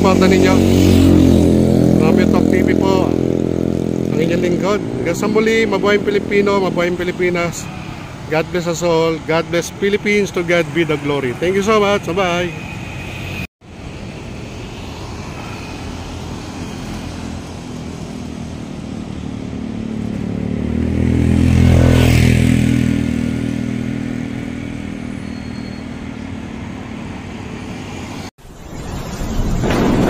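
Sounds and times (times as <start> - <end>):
vehicle passing by: 0.0 - 7.5, 13.0 - 28.3
steady traffic noise: 0.0 - 29.6.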